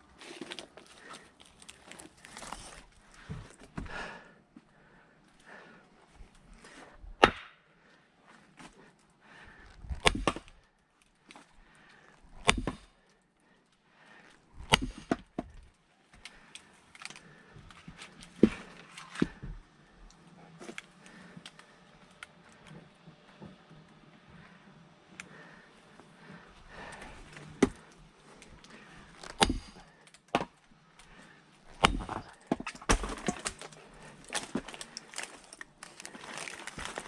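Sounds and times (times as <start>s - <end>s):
axe blows on a log: 29.4s - 29.8s.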